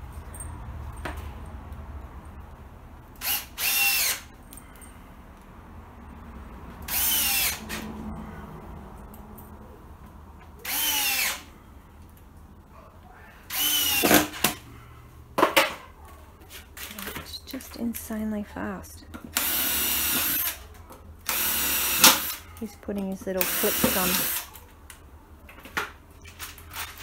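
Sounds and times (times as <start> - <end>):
power drill driving screws: 3.2 - 4.3, 6.9 - 7.8, 10.6 - 11.5, 13.5 - 14.6, 19.3 - 20.6, 21.2 - 22.4, 23.4 - 24.5.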